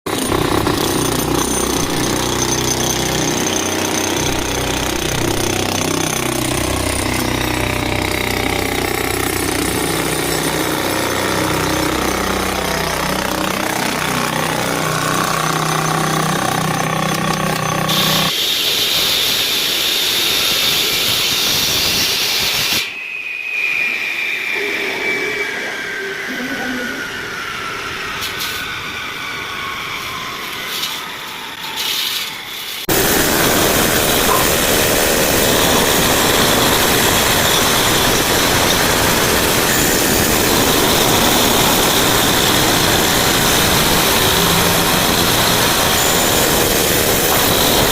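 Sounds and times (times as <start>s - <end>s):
powered breaker hammering: 0.1s - 18.3s, 32.9s - 47.9s
running engine: 0.3s - 18.3s, 32.9s - 47.9s
motor whine winding down: 21.6s - 47.9s.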